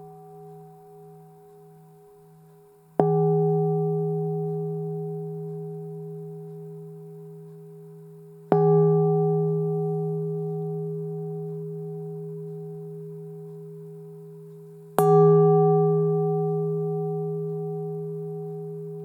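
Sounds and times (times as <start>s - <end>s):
singing bowl ringing: 15.0s - 19.0s.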